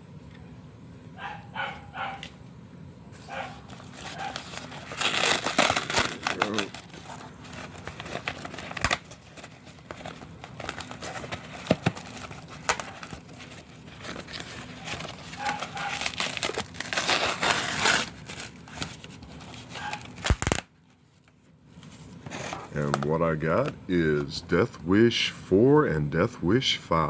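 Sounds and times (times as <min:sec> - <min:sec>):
packaging crinkling and tearing: 0:03.3 - 0:23.8.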